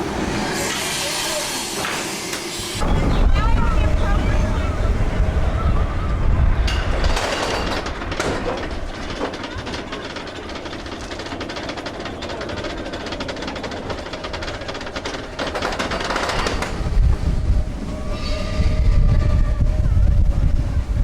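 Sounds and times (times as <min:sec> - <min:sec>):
roller coaster rattling on track: 0:00.0 - 0:21.0
wind rushing: 0:02.7 - 0:09.0, 0:16.4 - 0:21.0.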